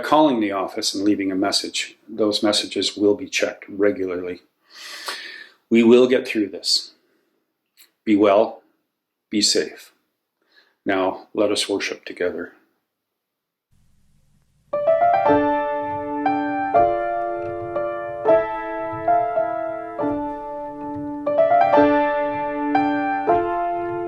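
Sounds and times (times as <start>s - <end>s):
piano playing gentle chords: 14.7s - 24.0s.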